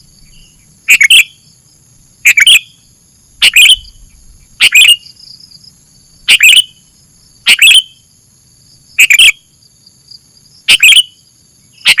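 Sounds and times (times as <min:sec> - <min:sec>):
bulbul calling: 0:00.0 - 0:01.6, 0:02.2 - 0:05.6, 0:06.2 - 0:08.1, 0:09.0 - 0:09.5, 0:10.6 - 0:12.0
high-pitched insect tones: 0:00.0 - 0:12.0.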